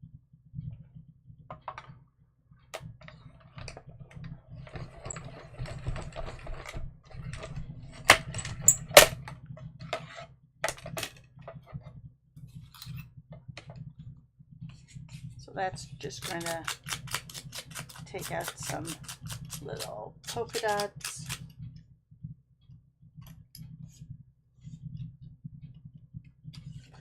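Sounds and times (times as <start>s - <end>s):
clicks taps and rustles of handling: 16.2s - 21.4s.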